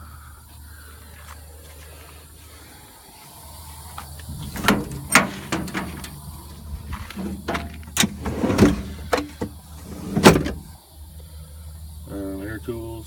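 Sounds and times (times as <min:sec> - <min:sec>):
metal drawers sliding: 0:04.3 - 0:10.7
metal tools clanking: 0:04.3 - 0:10.7.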